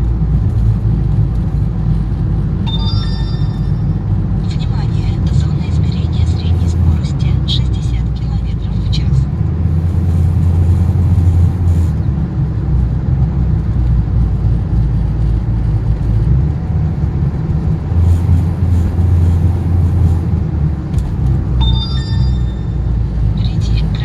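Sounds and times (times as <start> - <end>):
car engine drone and rumble: 0.0 - 24.0
road hiss: 6.0 - 8.0, 9.6 - 12.1, 17.9 - 21.2.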